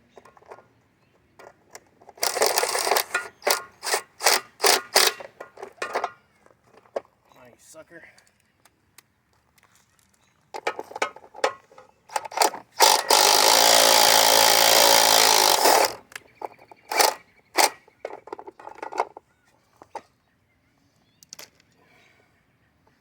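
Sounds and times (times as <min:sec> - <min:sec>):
metallic clicks and knocks: 0:01.4 - 0:07.1
power tool running: 0:02.2 - 0:05.3, 0:12.2 - 0:16.1, 0:16.9 - 0:17.8.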